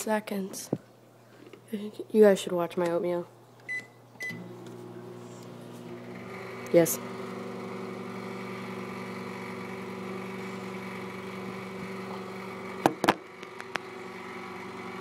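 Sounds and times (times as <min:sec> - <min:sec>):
microwave oven humming: 0:03.7 - 0:15.0.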